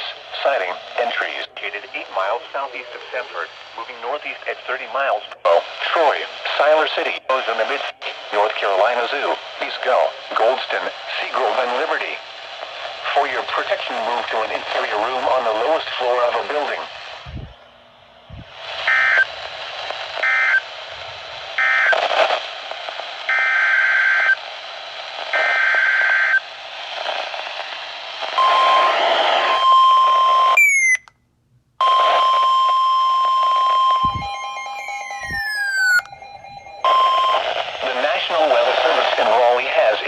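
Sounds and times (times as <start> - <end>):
radio static: 0.0 - 17.5, 18.6 - 23.2, 33.2 - 40.0
steady warning alarm tone: 31.8 - 39.2
buzzing digital data tones: 33.7 - 37.8
lower tone with falling sweeps: 33.9 - 37.8.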